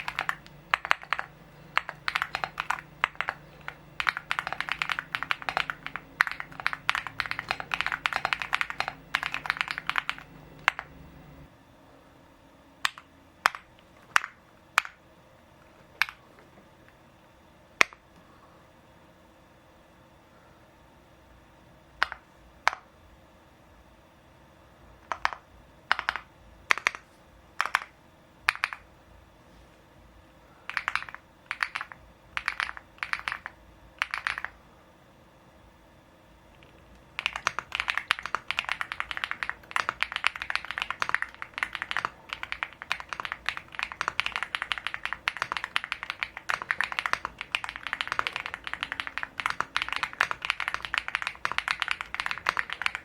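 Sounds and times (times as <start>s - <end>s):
mechanical keyboard typing: 0.0s - 11.5s, 25.1s - 27.0s, 27.6s - 27.9s, 28.5s - 28.8s, 30.7s - 34.6s, 36.6s - 53.0s.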